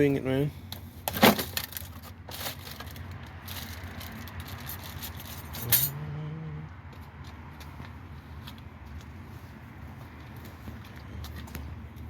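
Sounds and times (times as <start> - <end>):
person humming: 5.6 - 6.8.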